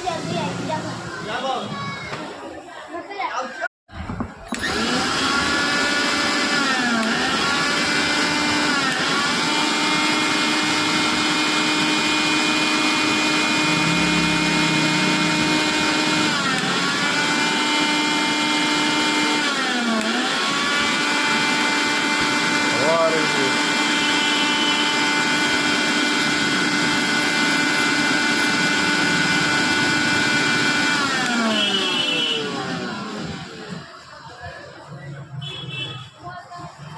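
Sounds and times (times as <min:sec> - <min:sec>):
mixer grinder motor whining: 0:04.5 - 0:33.9.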